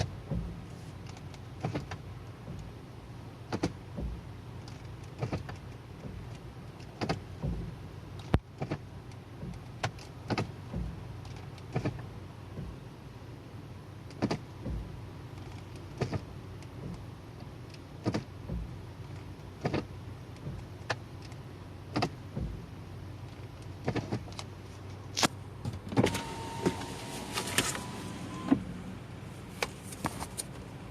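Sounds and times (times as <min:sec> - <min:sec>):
engine idling hum: 0:00.0 - 0:30.9
transmission knocking: 0:14.6 - 0:15.0
thin whine: 0:25.9 - 0:30.7.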